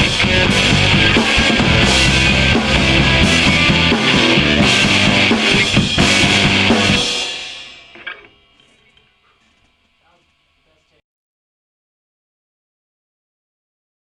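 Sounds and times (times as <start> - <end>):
final drum hit: 0.0 - 8.4
live rock band playing: 0.0 - 8.4.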